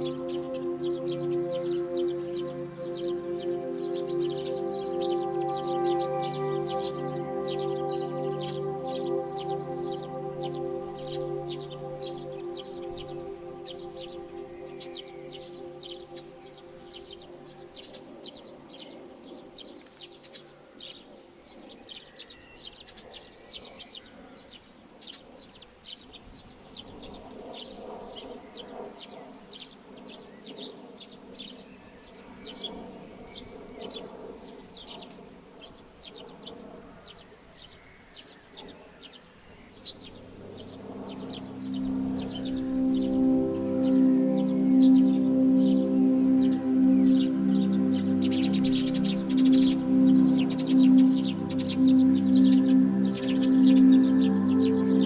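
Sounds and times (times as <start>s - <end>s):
low steady hum: 0.0s - 21.7s, 39.6s - 55.0s
small birds chirping: 0.0s - 55.0s.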